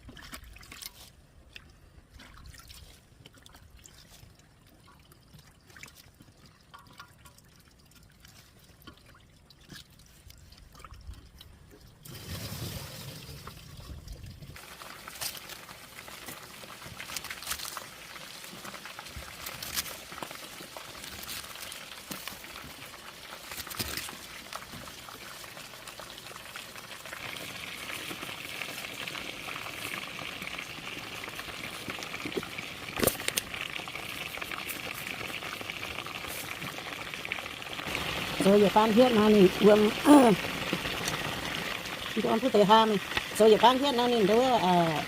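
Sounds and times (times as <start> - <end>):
food bubbling in a pan: 3.0 - 45.0
steady sizzle: 12.1 - 45.0.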